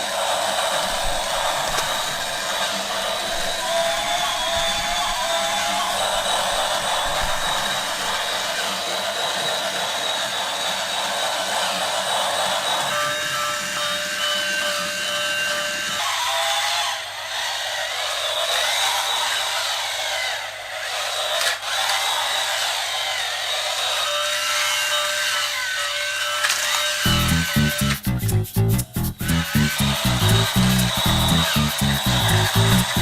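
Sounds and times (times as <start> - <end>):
toy motor and gears whirring: 0.8 - 8.6, 12.7 - 33.0
music with a beat: 27.1 - 33.0.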